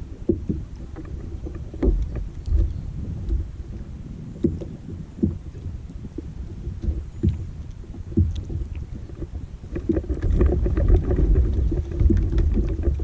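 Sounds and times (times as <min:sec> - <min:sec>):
low rumble: 0:00.0 - 0:13.0
knocks and thuds on boat hull: 0:04.4 - 0:05.4.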